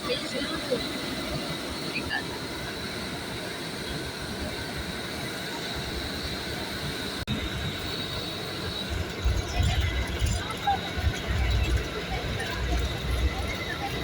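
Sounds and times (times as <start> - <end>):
moving vehicle rumbling: 5.6 - 14.0.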